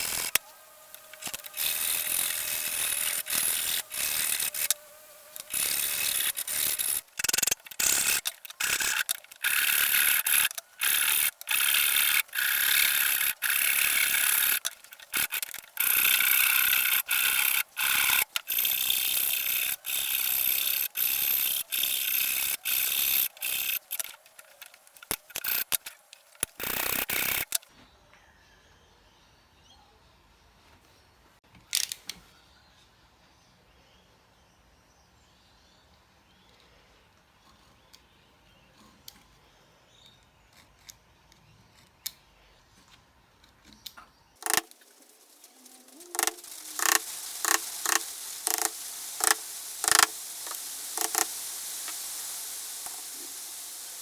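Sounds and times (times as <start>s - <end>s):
scraping on metal wrench: 0.0s - 27.7s, 44.4s - 54.0s.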